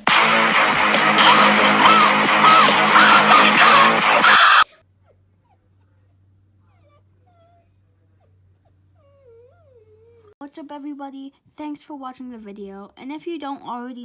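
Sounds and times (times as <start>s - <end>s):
dog whimpering and whining: 1.8s - 10.4s.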